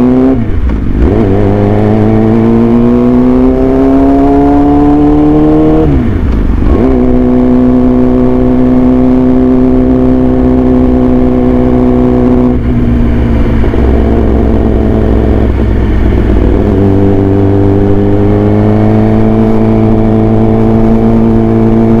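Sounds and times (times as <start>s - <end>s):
motorcycle engine revving: 0.0s - 22.0s.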